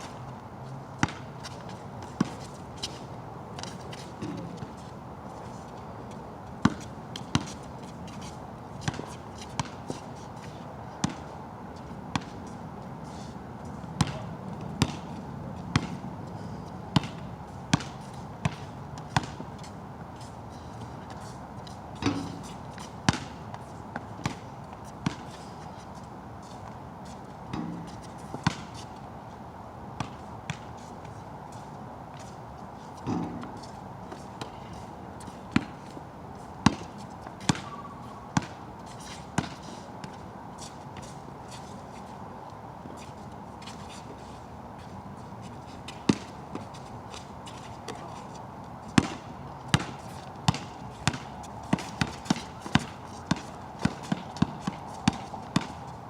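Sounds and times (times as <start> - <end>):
basketball bouncing on wet court: 1.0 - 1.3, 6.6 - 7.5, 14.0 - 15.1, 15.7 - 16.0, 17.0 - 19.4, 22.0 - 22.4, 23.1 - 23.3, 27.5 - 28.7, 33.0 - 33.6, 35.5 - 35.8, 36.6 - 36.9, 37.5 - 38.6, 46.0 - 46.3, 49.0 - 55.8.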